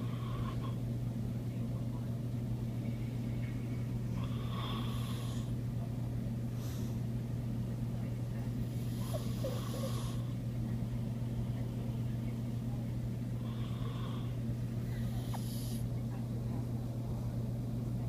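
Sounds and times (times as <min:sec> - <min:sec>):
steady low hum: 0:00.0 - 0:18.0
pet snoring: 0:04.2 - 0:05.5, 0:08.7 - 0:10.3, 0:15.1 - 0:15.9
soft breath: 0:06.4 - 0:07.1.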